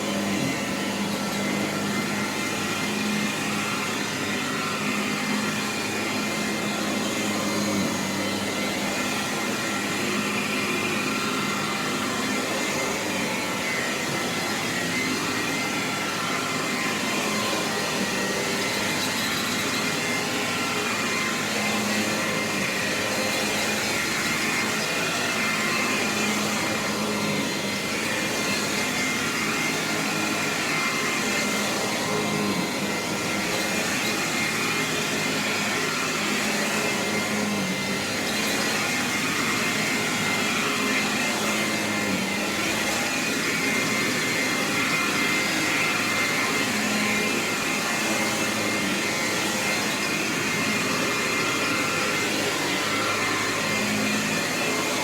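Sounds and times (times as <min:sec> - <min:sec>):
upright vacuum cleaner running: 0:00.0 - 0:55.0.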